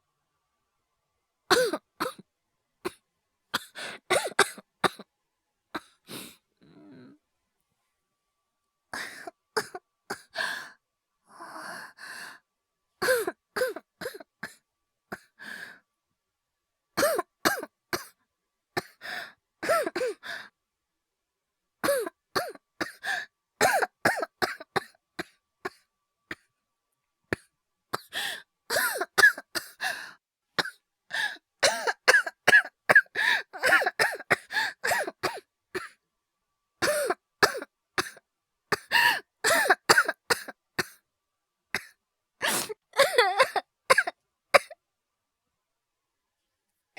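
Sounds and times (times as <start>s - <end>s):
person coughing: 1.5s - 2.2s, 3.6s - 5.0s, 13.0s - 14.3s, 17.0s - 18.1s, 21.9s - 23.0s, 23.6s - 24.9s, 28.7s - 29.8s, 31.6s - 36.0s, 36.8s - 38.2s, 38.8s - 41.0s, 41.8s - 44.8s.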